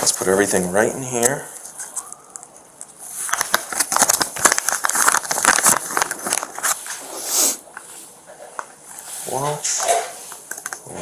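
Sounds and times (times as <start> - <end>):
plastic bag crinkling: 1.6 - 7.0.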